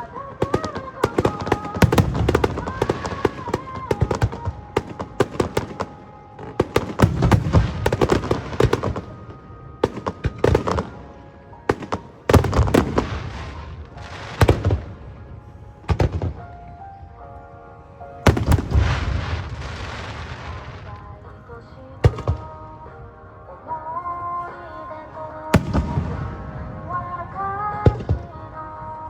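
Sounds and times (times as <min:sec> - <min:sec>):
fireworks crackling: 0:00.0 - 0:16.8, 0:18.3 - 0:21.4
loud firework bangs: 0:00.4 - 0:06.0, 0:06.6 - 0:09.2, 0:11.7 - 0:15.0, 0:18.3 - 0:20.9, 0:25.6 - 0:26.8.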